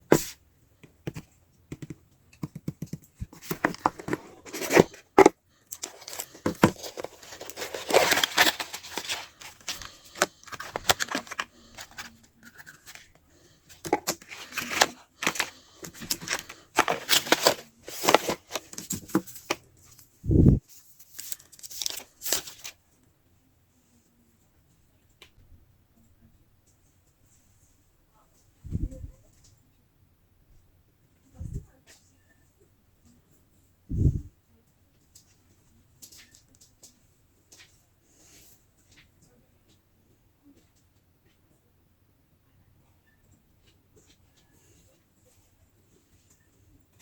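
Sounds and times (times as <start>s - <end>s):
packaging crinkling and scraping: 3.2s - 20.0s, 20.8s - 22.8s
plastic wrap tearing: 5.7s - 13.0s.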